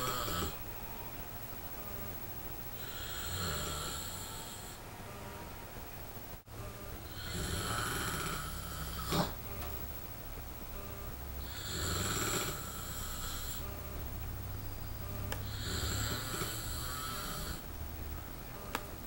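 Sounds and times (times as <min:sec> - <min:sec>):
man snoring: 0:00.0 - 0:00.6, 0:02.8 - 0:04.8, 0:06.6 - 0:09.6, 0:10.7 - 0:14.0, 0:15.0 - 0:17.6
sharp snort: 0:07.2 - 0:09.4.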